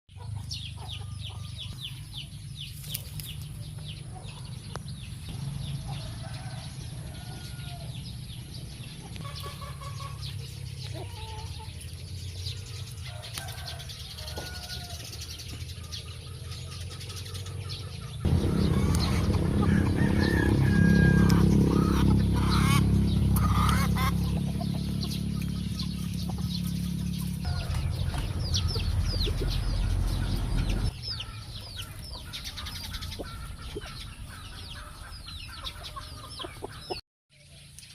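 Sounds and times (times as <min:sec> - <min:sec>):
birds chirping: 0:00.1 - 0:37.9
steady low rumble: 0:18.2 - 0:35.3.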